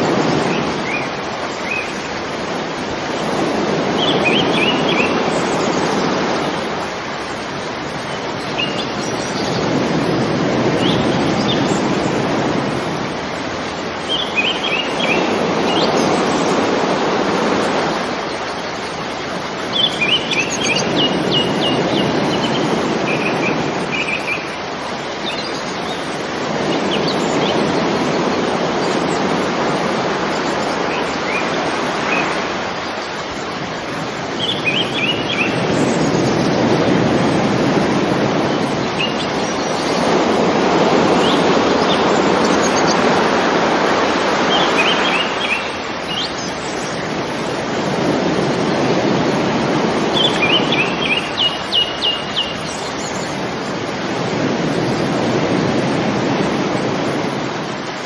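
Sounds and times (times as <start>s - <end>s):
waves washing in: 0.0s - 58.0s
small birds chirping: 7.3s - 9.8s, 13.6s - 16.2s, 18.2s - 29.3s, 30.3s - 36.8s, 38.4s - 43.4s, 44.4s - 47.6s, 50.0s - 53.6s.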